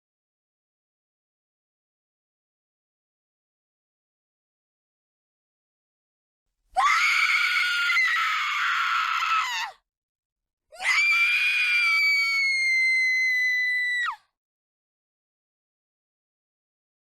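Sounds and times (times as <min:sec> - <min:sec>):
woman screaming in terror: 0:06.8 - 0:09.8, 0:10.8 - 0:14.2.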